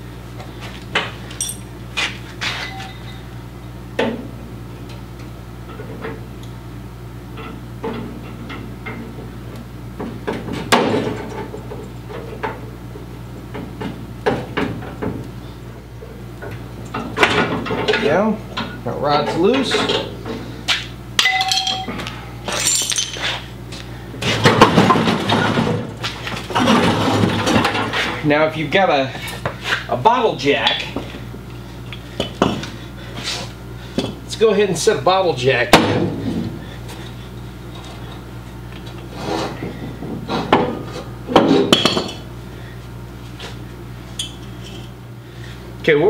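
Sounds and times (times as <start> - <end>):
metal parts clinking and rattling: 1.4 - 1.7, 21.2 - 23.5
metal clanking and scraping: 24.2 - 28.2.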